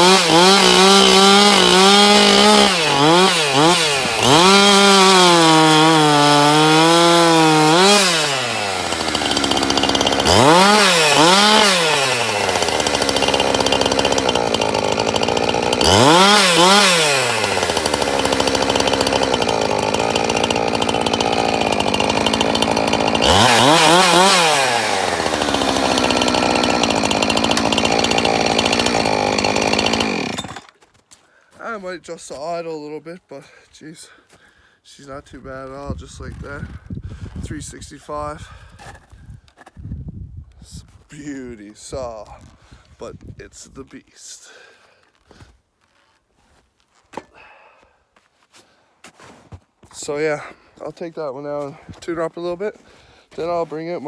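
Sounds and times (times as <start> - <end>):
chainsaw engine revving and idling: 0.0 - 30.7.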